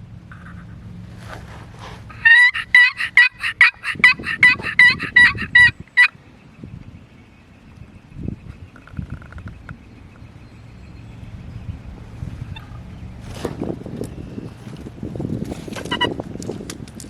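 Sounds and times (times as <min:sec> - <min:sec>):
turkey yelping: 0:02.0 - 0:06.2.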